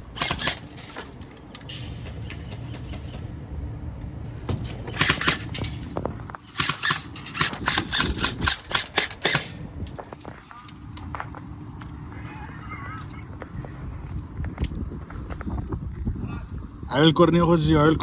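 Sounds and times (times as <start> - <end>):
airsoft gun shots: 6.5 - 9.7.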